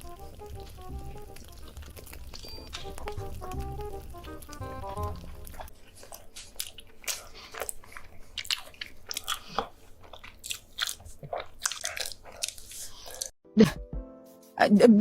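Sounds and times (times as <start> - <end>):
sharp food crackles: 0.0 - 13.4
crunchy bites and chewing: 4.2 - 13.3.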